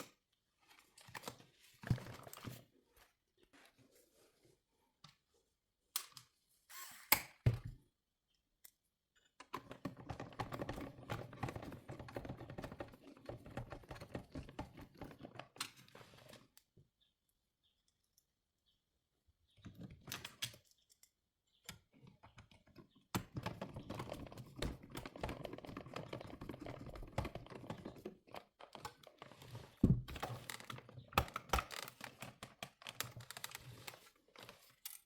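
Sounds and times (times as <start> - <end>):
plastic parts clattering: 23.2 - 35.0.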